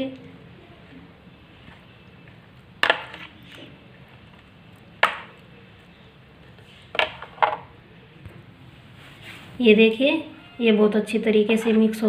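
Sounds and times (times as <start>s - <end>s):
stirring greens in curd: 0.1s - 6.9s.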